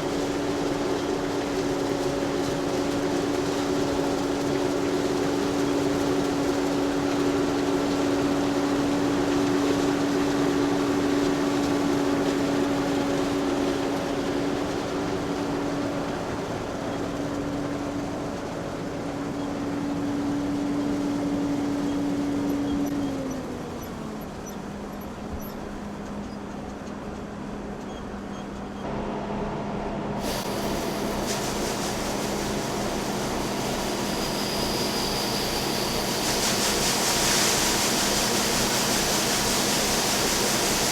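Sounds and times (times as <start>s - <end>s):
steady hiss: 30.2s - 40.9s.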